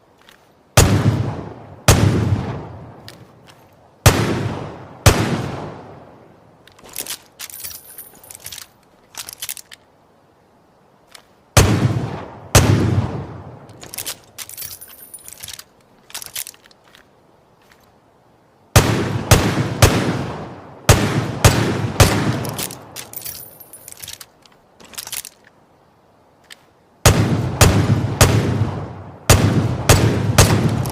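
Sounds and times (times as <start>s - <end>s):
metallic clicks and clinks: 6.7s - 9.9s, 13.7s - 17.0s, 22.4s - 25.5s.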